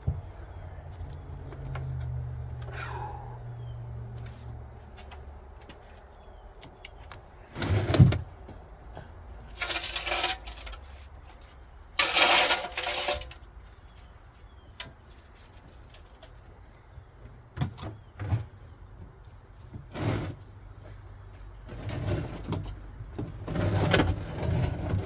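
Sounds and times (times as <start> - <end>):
scraping and clattering of parts: 7.5 - 8.3, 9.4 - 13.5, 21.7 - 25.0.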